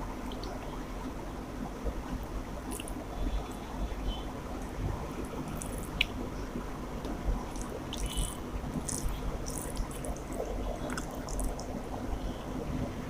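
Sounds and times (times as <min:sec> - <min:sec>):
wet chewing and squishing: 0:02.7 - 0:03.0, 0:05.5 - 0:06.2, 0:07.5 - 0:11.7.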